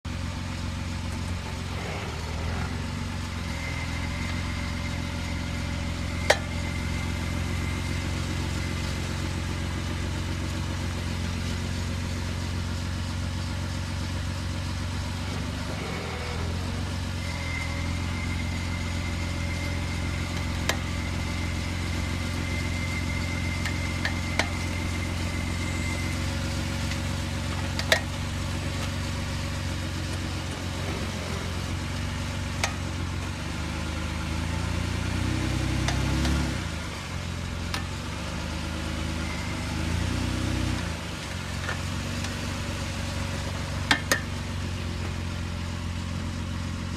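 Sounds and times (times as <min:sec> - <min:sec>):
engine idling: 0:00.0 - 0:46.9
engine sharp pops: 0:32.0 - 0:33.2, 0:35.8 - 0:36.4, 0:43.8 - 0:45.2.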